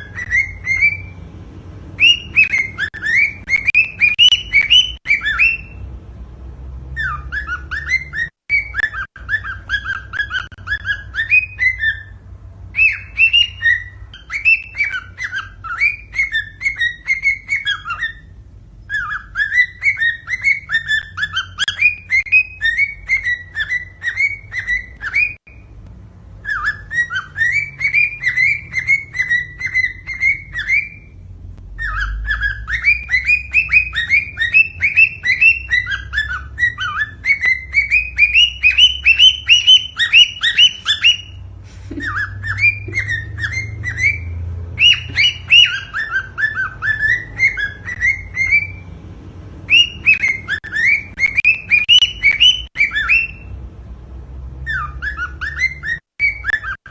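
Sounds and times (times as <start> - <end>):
cockatiel whistled chirps: 0.0 - 1.2, 2.0 - 5.9, 7.0 - 25.7, 26.4 - 48.9, 49.6 - 53.5, 54.6 - 56.9.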